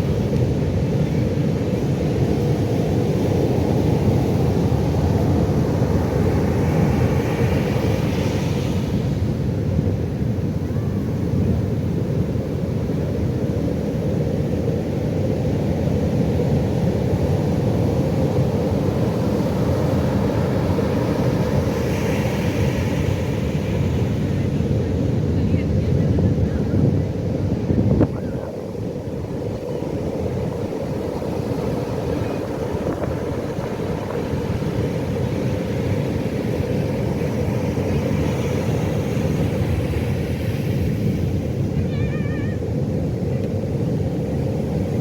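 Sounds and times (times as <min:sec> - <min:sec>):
waves breaking: 0:28.0 - 0:42.8.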